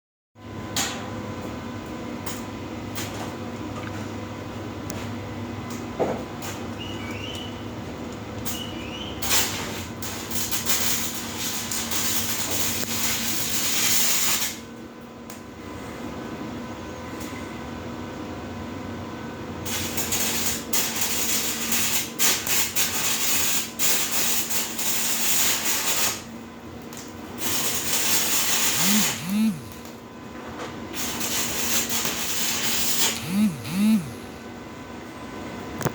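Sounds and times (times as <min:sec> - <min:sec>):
welding arc crackling and hissing: 0:08.4 - 0:14.7, 0:19.6 - 0:30.0, 0:30.9 - 0:34.1
faint steady hum: 0:33.2 - 0:35.9.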